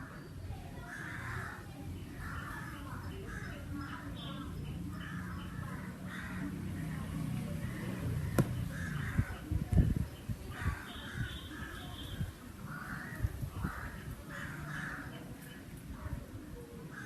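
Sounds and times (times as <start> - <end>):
crows cawing: 0.9 - 3.7, 4.9 - 6.6, 8.6 - 9.4, 12.6 - 15.2.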